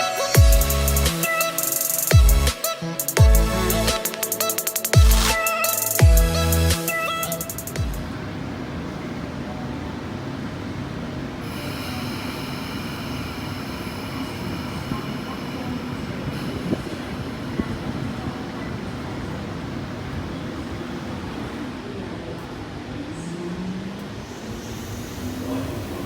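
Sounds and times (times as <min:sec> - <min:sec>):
train rumbling: 0:00.0 - 0:26.0
high multi-tone squeal: 0:11.4 - 0:19.6.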